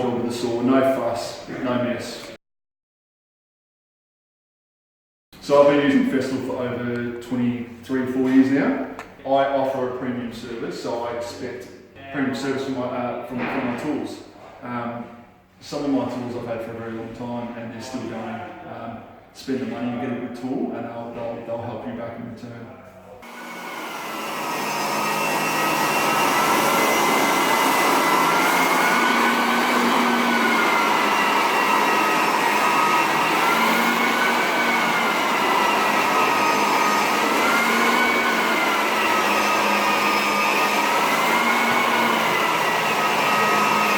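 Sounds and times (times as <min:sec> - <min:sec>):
floor sanding machine whine: 0:00.0 - 0:01.9, 0:23.2 - 0:43.9
dust extractor running: 0:23.2 - 0:43.9.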